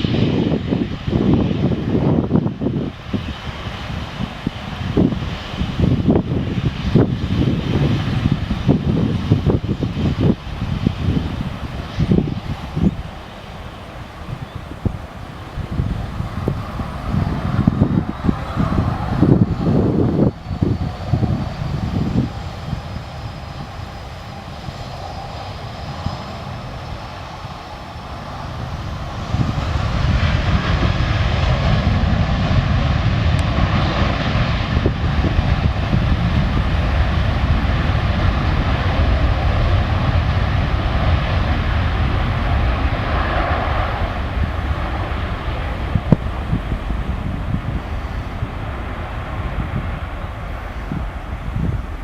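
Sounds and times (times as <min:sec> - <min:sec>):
heavy aircraft engine noise: 0:00.0 - 0:52.0
jet engine whine: 0:00.0 - 0:52.0.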